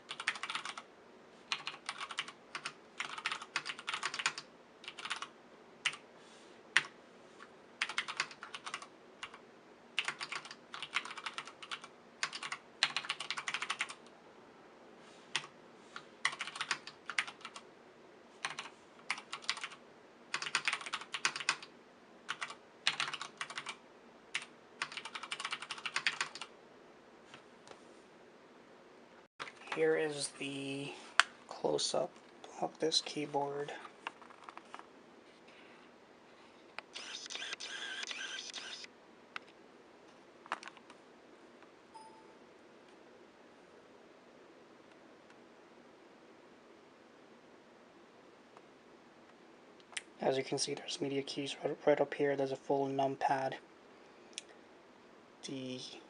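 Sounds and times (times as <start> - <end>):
mechanical keyboard typing: 0.1 - 0.8, 1.5 - 6.0, 7.8 - 9.4, 10.0 - 14.0, 16.2 - 17.6, 18.4 - 21.7, 22.3 - 26.5.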